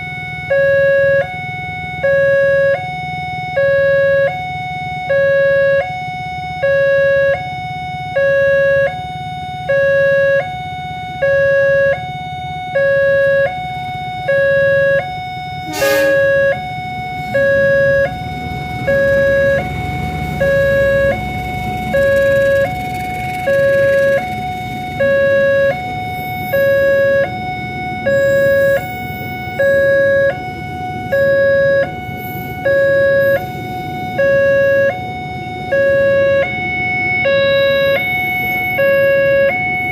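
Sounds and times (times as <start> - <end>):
two-tone level crossing siren: 0.0 - 39.9
low steady rumble: 15.6 - 38.4.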